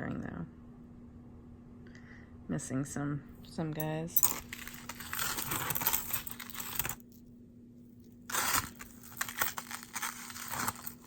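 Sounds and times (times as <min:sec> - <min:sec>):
jewelry rustling and clinking: 0:03.8 - 0:07.2, 0:08.1 - 0:11.0.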